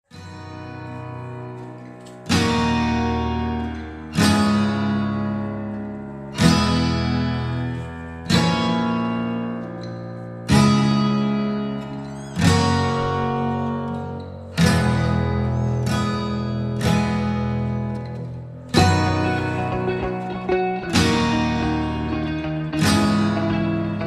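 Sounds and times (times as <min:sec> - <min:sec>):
acoustic guitar strumming chords: 0:00.1 - 0:24.0.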